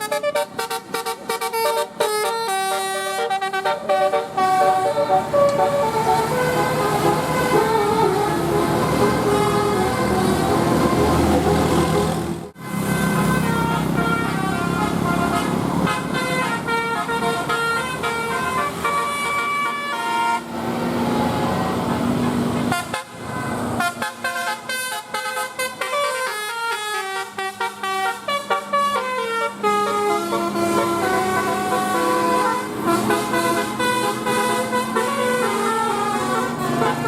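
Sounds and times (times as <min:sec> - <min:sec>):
musical bus horn melody: 0:00.0 - 0:21.4, 0:22.6 - 0:37.0.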